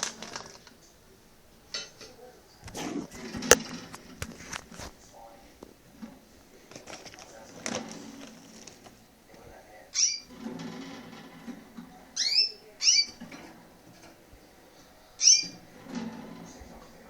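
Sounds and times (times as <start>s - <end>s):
faint low background murmur: 0.0s - 17.0s
canaries sweeping call notes: 9.9s - 10.3s, 12.1s - 13.2s, 15.1s - 15.7s.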